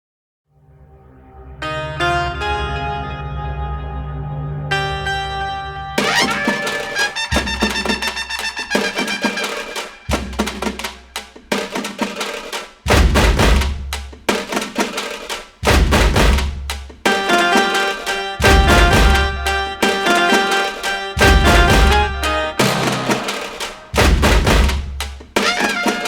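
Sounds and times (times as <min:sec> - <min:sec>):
music with heavy drums and bass: 0:06.1 - 0:12.2, 0:12.9 - 0:14.7, 0:15.6 - 0:17.3, 0:18.4 - 0:20.4, 0:21.2 - 0:26.0.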